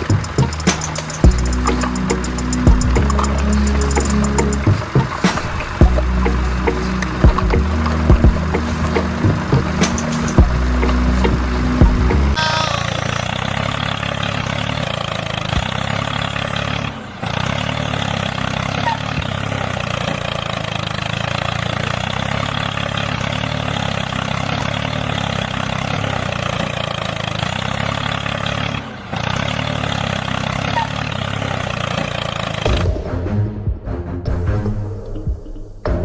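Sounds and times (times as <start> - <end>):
motor humming: 0.0 - 12.4.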